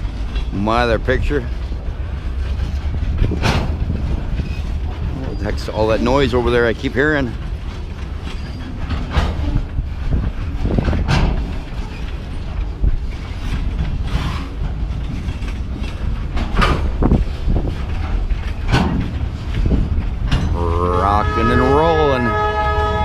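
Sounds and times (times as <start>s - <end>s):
freight cars rumbling past: 0.0s - 23.0s
train wheels clacking on rail: 0.0s - 23.0s.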